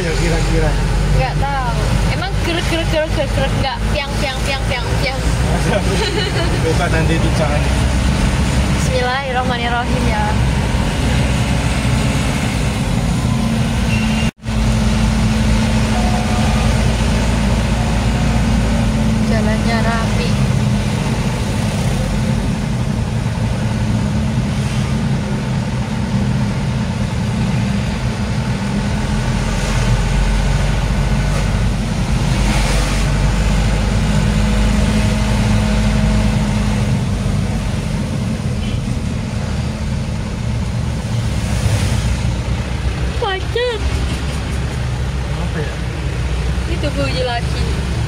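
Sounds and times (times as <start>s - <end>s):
road noise: 0.0s - 48.0s
truck engine running: 0.0s - 48.0s.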